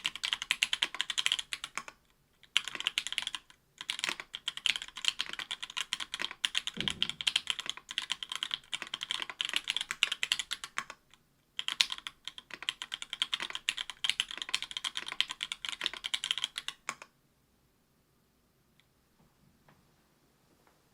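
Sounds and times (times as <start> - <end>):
fast keyboard typing: 0.0 - 11.0, 11.6 - 17.1
deeper thud: 6.8 - 7.2.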